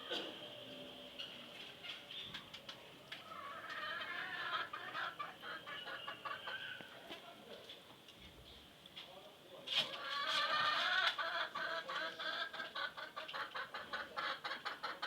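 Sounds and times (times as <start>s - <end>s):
chickens clucking and chirping: 1.6s - 7.2s, 9.8s - 15.0s.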